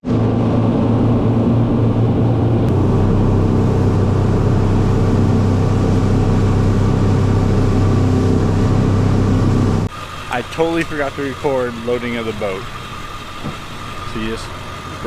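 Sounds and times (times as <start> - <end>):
loud motor engine running: 0.0 - 15.0.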